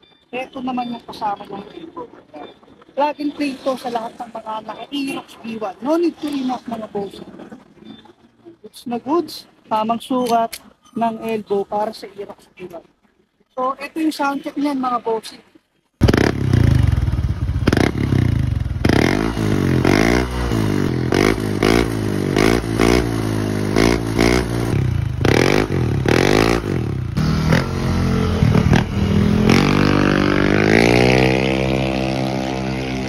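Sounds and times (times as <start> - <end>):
scooter engine revving: 16.0 - 33.0.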